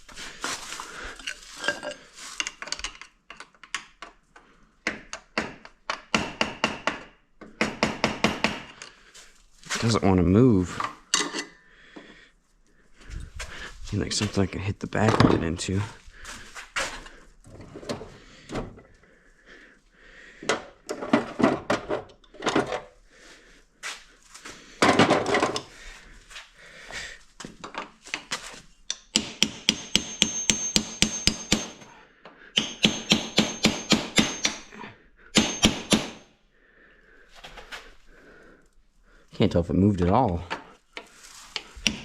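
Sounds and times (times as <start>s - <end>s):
hammer striking metal: 28.9s - 31.9s, 32.6s - 34.8s, 35.4s - 36.3s.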